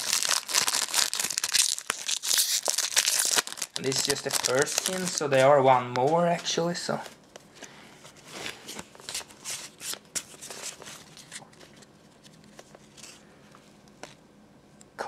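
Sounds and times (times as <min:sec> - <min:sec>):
trading cards and foil rustling: 0:00.0 - 0:07.0.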